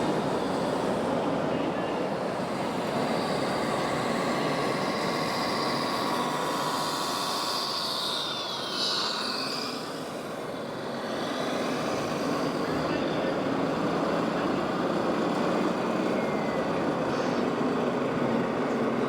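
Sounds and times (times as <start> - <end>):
small electric motors whining: 2.2 - 13.5.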